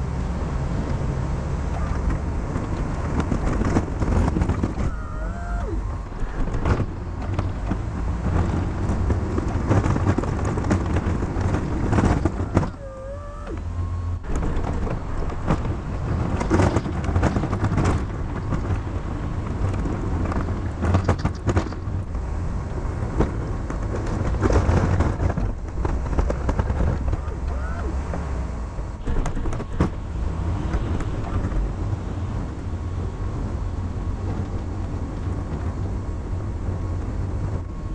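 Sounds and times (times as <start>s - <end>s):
plow blade scraping and knocking: 0.0s - 37.9s
truck engine running under load: 0.0s - 37.9s
short sliding whines: 4.4s - 6.9s, 12.0s - 15.2s.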